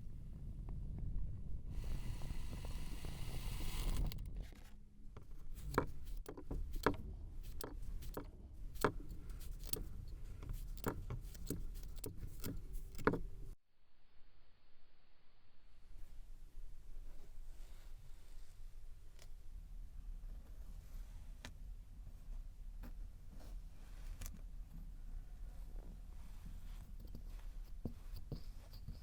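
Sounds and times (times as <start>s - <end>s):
kinetic sand being cut: 1.8s - 4.3s.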